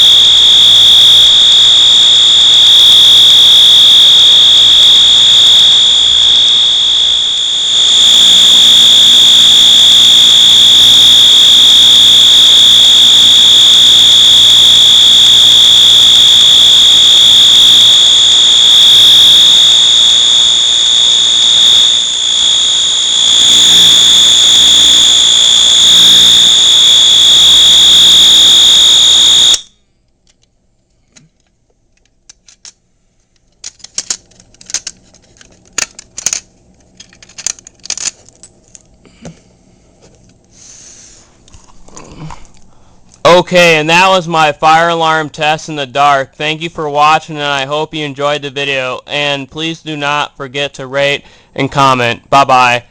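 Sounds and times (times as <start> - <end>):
fire alarm horn tone: 0.0 - 29.8.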